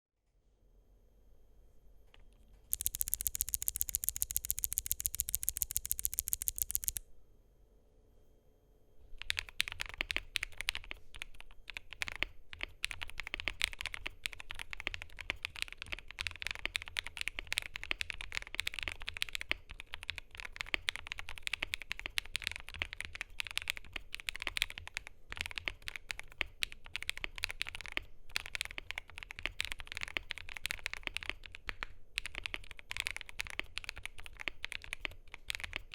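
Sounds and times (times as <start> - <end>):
mechanical keyboard typing: 2.7 - 7.0, 9.2 - 35.9
rapid even run of bright clicks: 2.7 - 7.0.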